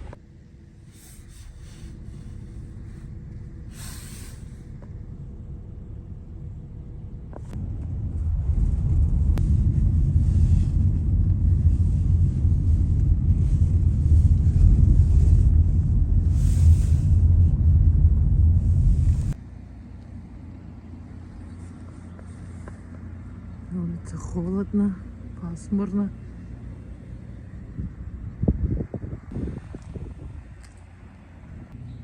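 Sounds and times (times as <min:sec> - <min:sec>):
wind buffeting microphone: 0:07.5 - 0:19.4, 0:27.4 - 0:31.8.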